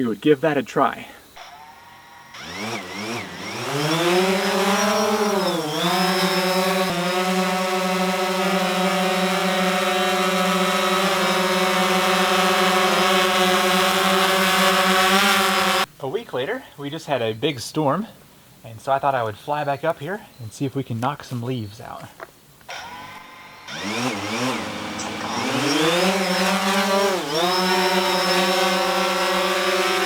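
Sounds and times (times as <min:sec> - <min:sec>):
drone propellers buzzing: 0:01.4 - 0:15.9, 0:22.8 - 0:30.0.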